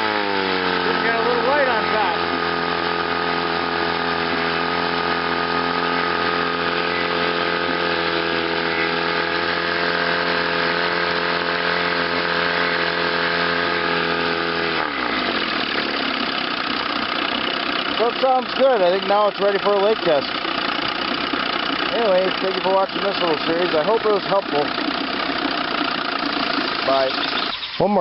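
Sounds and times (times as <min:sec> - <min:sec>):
outboard motor running: 0:00.0 - 0:28.0.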